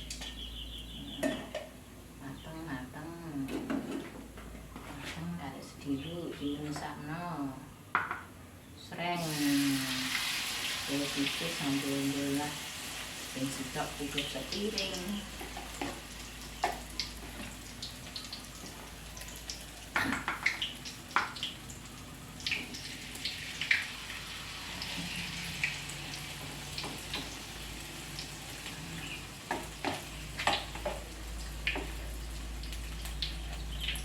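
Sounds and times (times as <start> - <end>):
fish frying in oil: 9.2 - 34.0.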